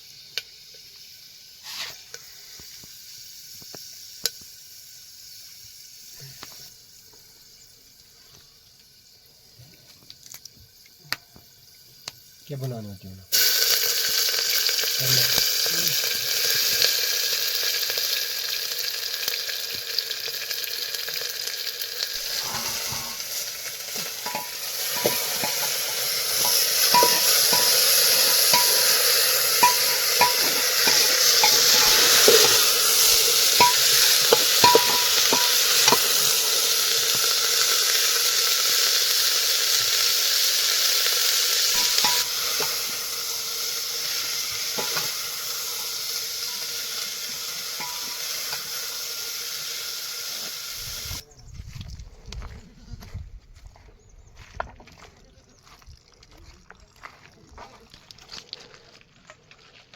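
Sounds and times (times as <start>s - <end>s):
food sizzling in hot oil: 0.0s - 51.2s
metal utensil clinking on pan: 23.9s - 36.2s, 41.8s - 43.0s, 44.8s - 45.2s, 47.8s - 48.7s.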